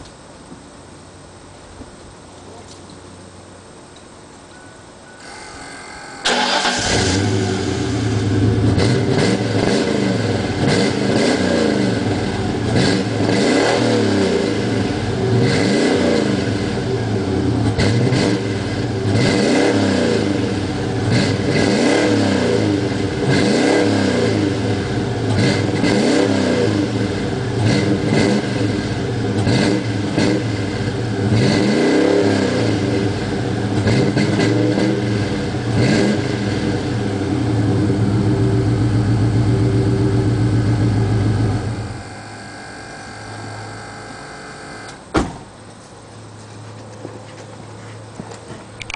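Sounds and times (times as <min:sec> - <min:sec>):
car engine revving: 0:06.2 - 0:45.0.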